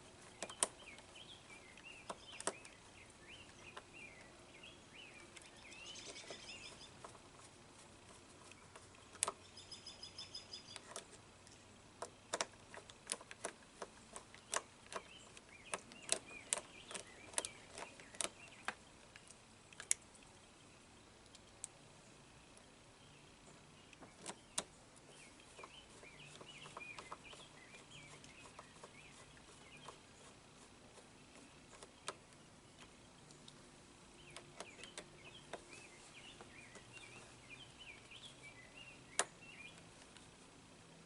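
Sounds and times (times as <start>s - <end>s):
birds chirping and trilling: 0.0s - 19.4s, 22.0s - 39.9s
small tools clicking and tapping: 12.0s - 20.0s.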